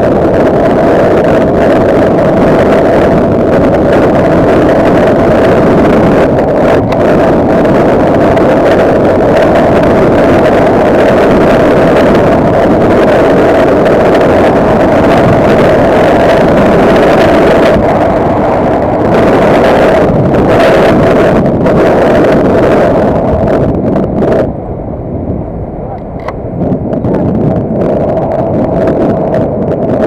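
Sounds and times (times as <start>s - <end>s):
steady whine: 0.0s - 30.0s
vehicle engine running: 0.0s - 30.0s
wind noise on microphone: 0.0s - 30.0s.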